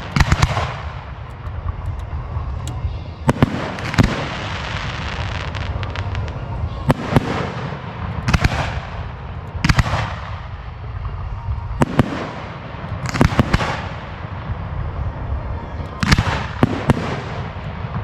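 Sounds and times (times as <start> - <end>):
fireworks bangs: 0.0 - 18.0
fireworks crackling hiss: 0.0 - 18.0
low rumble of fireworks: 0.0 - 18.0.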